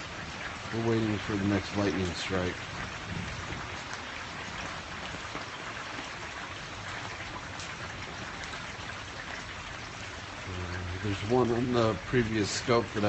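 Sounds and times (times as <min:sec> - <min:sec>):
close raindrops striking: 0:00.0 - 0:13.0
steady rain falling: 0:00.0 - 0:13.0.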